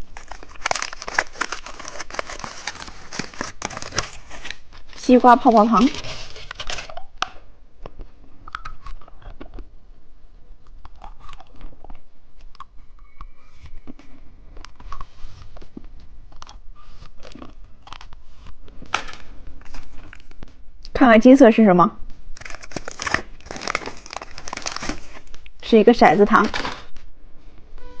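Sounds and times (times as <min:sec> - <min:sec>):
small crunches: 0:00.0 - 0:05.1, 0:13.6 - 0:20.4, 0:22.3 - 0:25.5
gum being chewed: 0:07.9 - 0:09.7, 0:10.6 - 0:15.1, 0:15.7 - 0:18.6.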